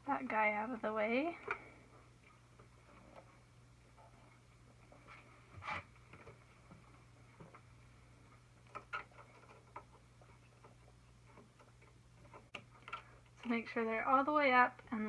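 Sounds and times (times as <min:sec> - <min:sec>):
small parts clicking and tapping: 0:08.3 - 0:15.0.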